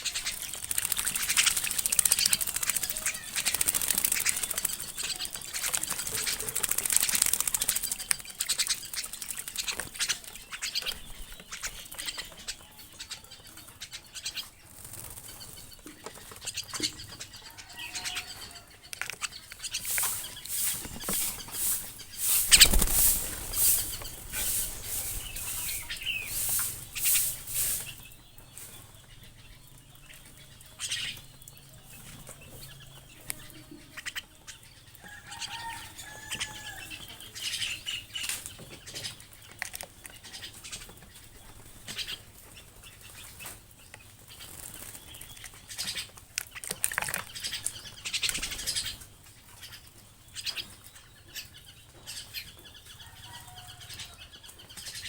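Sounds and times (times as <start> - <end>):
faint bird chirps: 0.0 - 55.0
rustling and scraping: 19.1 - 28.9.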